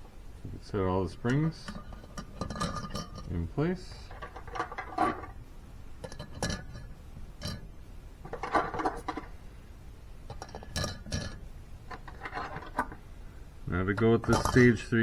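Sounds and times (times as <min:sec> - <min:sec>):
metal valve springs clinking: 0:01.2 - 0:05.4, 0:06.0 - 0:07.7, 0:10.3 - 0:13.0, 0:13.9 - 0:14.9.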